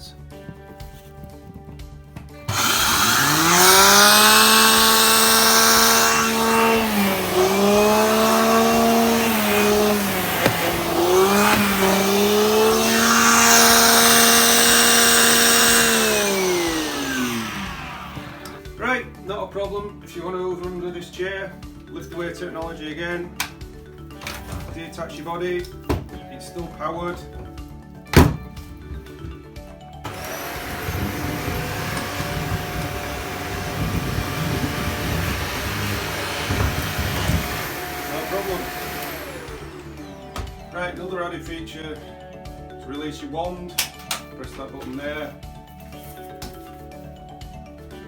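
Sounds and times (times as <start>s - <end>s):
vacuum cleaner motor running: 2.5s - 18.7s, 30.1s - 40.7s.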